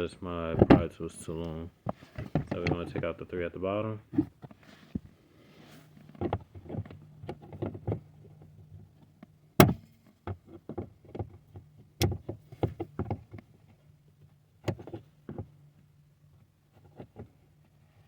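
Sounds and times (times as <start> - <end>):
small plastic clicks and knocks: 6.1 - 13.8, 14.6 - 17.5.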